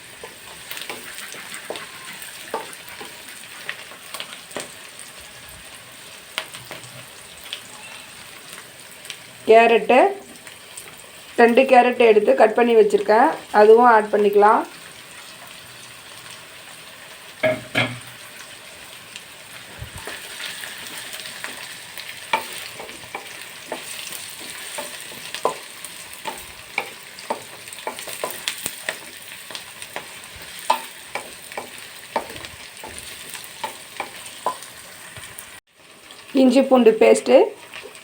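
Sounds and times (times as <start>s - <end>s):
vegetables sizzling in oil: 0.0s - 38.0s
spoon scraping a pan: 0.2s - 3.9s, 20.0s - 35.3s.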